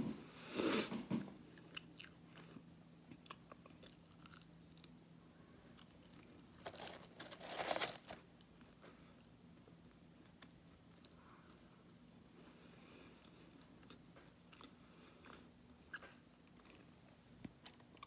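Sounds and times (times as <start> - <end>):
crunchy bites of food: 5.8 - 8.2.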